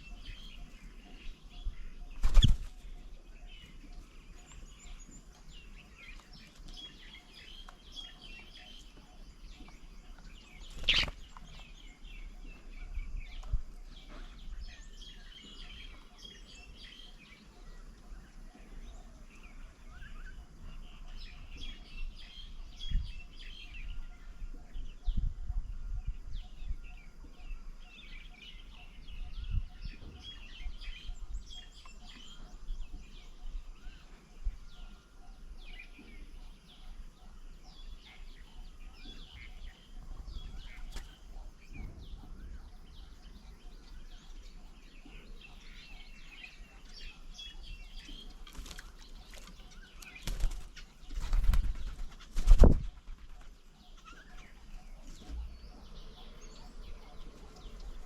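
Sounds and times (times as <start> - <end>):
small birds chirping: 0.0 - 58.0.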